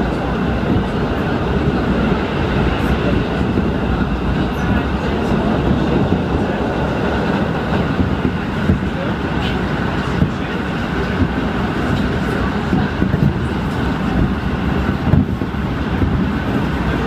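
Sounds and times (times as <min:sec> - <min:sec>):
train rumble inside carriage: 0:00.0 - 0:17.0.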